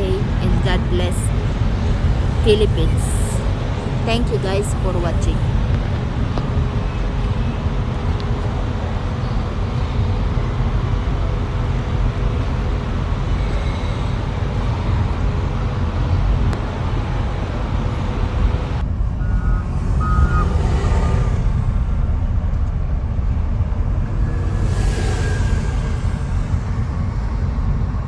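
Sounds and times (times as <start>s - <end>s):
heavy machinery rumbling: 0.0s - 28.0s
backup alarm beeps: 19.1s - 21.5s.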